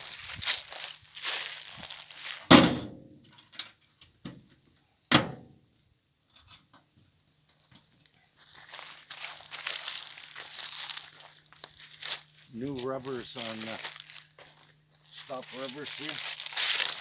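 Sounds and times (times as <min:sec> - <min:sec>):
metal door banging shut: 0:02.5 - 0:03.0, 0:05.1 - 0:05.4.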